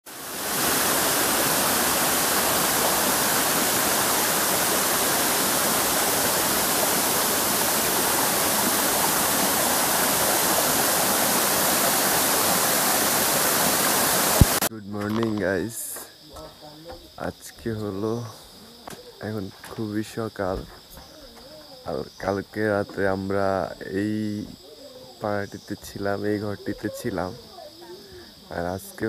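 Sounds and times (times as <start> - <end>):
waterfall rushing: 0.1 - 15.3.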